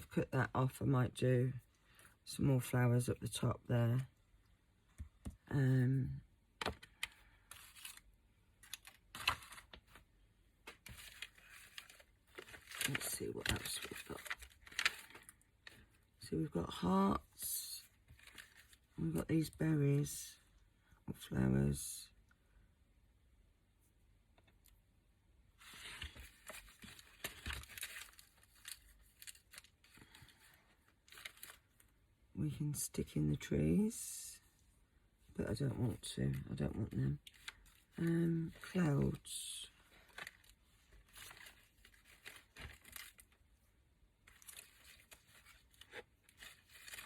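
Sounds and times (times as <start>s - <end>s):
paper rustling: 6.6s - 16.0s, 17.8s - 19.0s, 25.6s - 31.9s, 35.9s - 43.6s, 44.2s - 47.0s.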